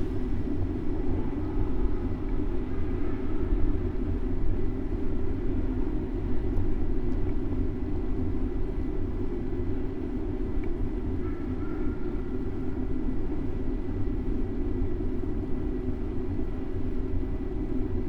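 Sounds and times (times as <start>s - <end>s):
city traffic rumble: 0.0s - 11.6s.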